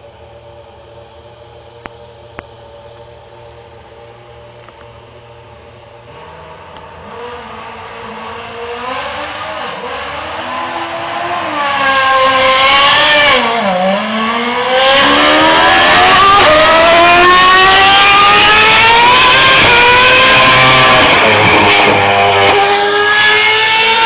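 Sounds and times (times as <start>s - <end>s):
racing car engine screaming: 6.2s - 24.0s.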